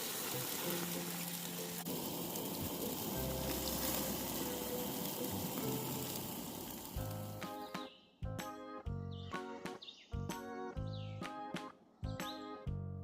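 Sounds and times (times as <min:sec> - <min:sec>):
steady hiss: 0:00.0 - 0:07.6
soft background music: 0:00.0 - 0:13.0.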